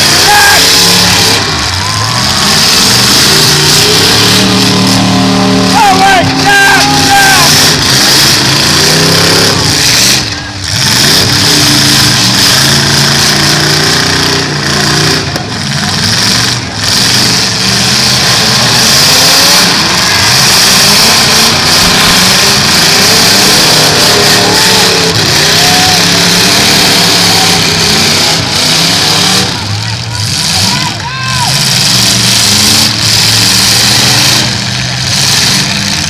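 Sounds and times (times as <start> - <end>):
car engines revving: 0.0 - 36.0.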